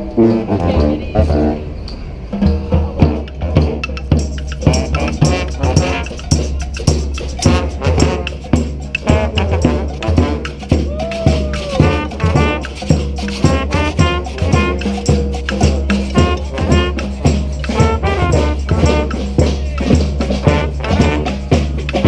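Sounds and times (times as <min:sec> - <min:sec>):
brass band playing: 0:00.0 - 0:01.8, 0:02.4 - 0:22.0
drums and hand percussion: 0:00.0 - 0:22.0.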